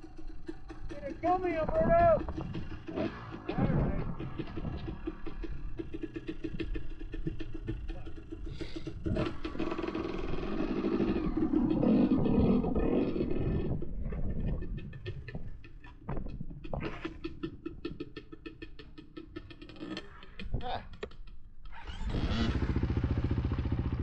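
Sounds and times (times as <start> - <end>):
dirt bike engine revving: 0.0 - 13.8, 21.7 - 24.0.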